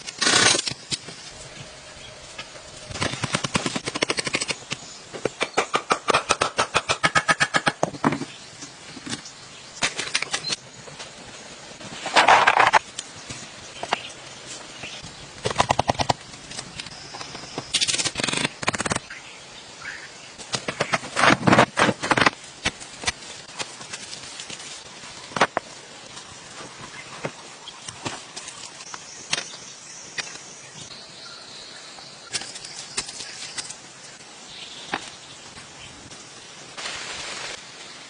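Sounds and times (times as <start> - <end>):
sticks cracking and rustling: 20.4 - 29.6, 32.3 - 33.9.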